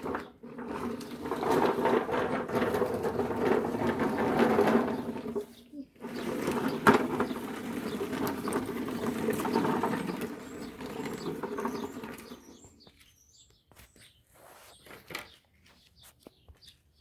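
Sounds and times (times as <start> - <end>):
small gasoline engine starting: 0.0 - 12.7
small birds chirping: 4.9 - 17.0.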